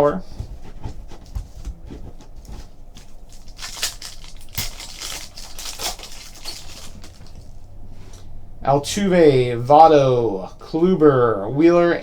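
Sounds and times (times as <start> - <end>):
wrapper tearing and crinkling: 3.3 - 7.6.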